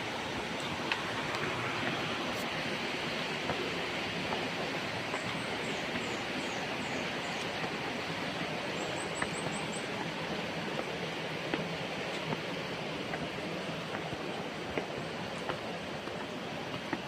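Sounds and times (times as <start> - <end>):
steady rushing noise: 0.0 - 17.0.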